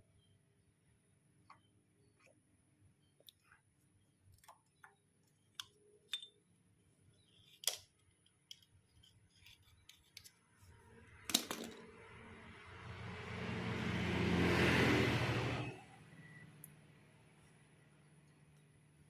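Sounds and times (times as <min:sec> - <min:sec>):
metallic clicks of parts handled: 0:05.6 - 0:06.4, 0:07.3 - 0:10.4.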